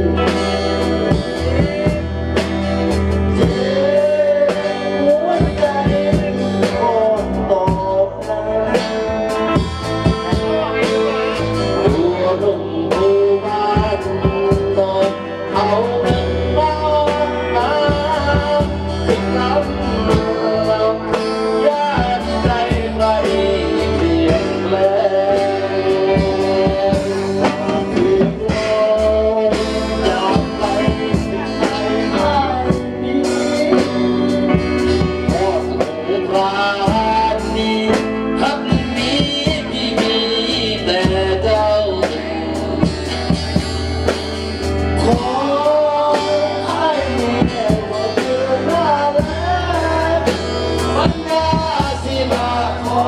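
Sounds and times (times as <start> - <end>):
bass line: 0.0 - 53.0
person singing: 0.0 - 53.0
plucked guitar: 0.0 - 53.0
drum beat: 8.8 - 14.9, 25.4 - 36.0, 36.8 - 45.5, 47.2 - 53.0.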